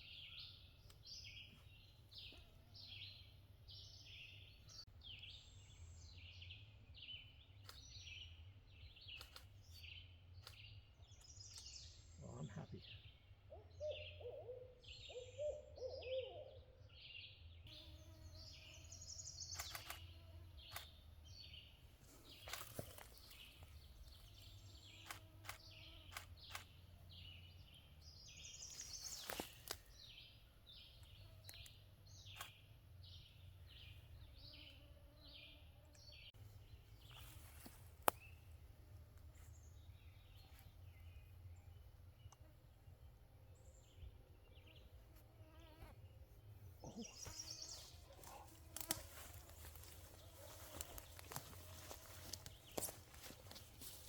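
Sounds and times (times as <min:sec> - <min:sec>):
sharp clicks: 0:09.2 - 0:09.5, 0:19.6 - 0:20.1, 0:20.7 - 0:21.0, 0:25.0 - 0:26.7.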